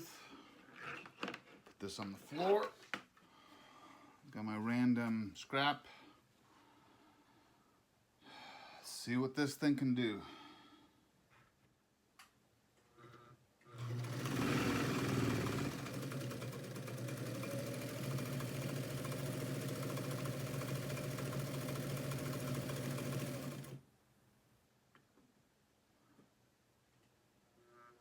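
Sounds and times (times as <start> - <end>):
sewing machine stitching: 13.7 - 23.8.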